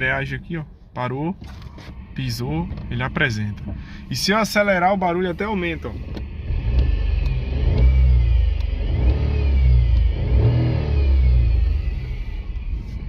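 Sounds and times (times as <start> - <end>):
clutch bearing whine: 1.4 - 13.0
car engine revving: 1.6 - 13.0.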